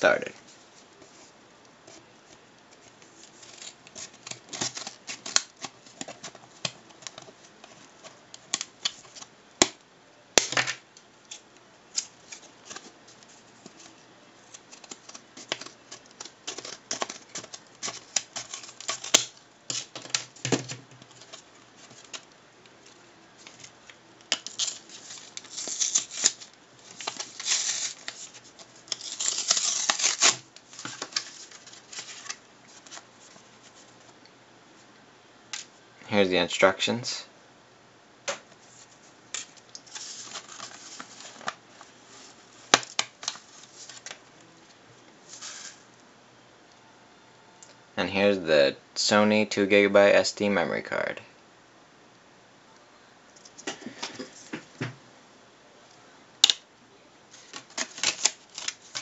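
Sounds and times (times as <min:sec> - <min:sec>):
plastic packaging crinkling: 0:03.0 - 0:09.3, 0:11.3 - 0:33.9, 0:39.4 - 0:44.2, 0:57.3 - 0:59.0.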